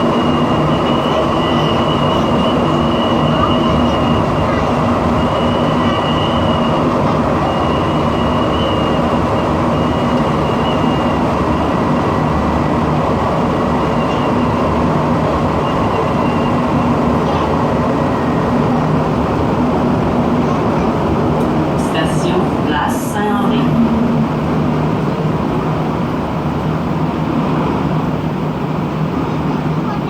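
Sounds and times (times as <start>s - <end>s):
metro train rumbling: 0.0s - 30.0s
high-pitched whine: 21.8s - 26.2s
low hum: 21.8s - 26.4s.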